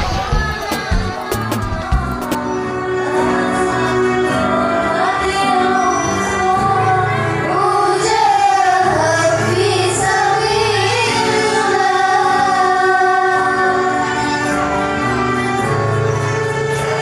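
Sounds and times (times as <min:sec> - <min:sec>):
held accompanying chords: 0:00.0 - 0:05.5
woman singing: 0:00.0 - 0:14.4.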